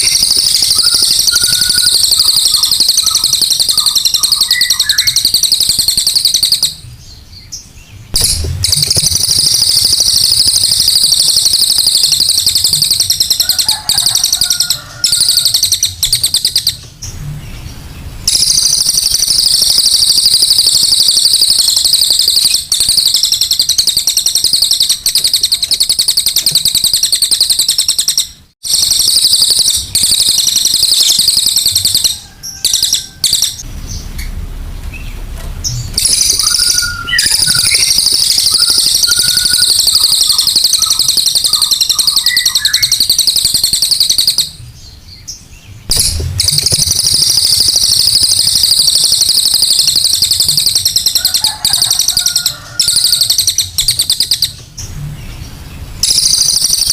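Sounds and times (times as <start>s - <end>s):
songbird chattering trill: 0.0s - 16.9s, 17.5s - 34.1s, 36.0s - 54.7s.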